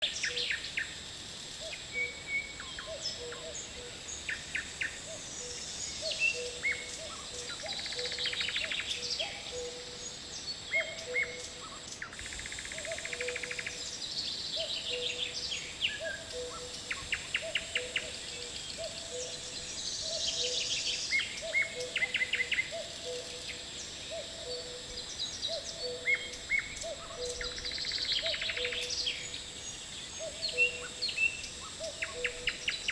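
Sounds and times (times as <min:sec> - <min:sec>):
high insect whine: 0:00.0 - 0:32.9.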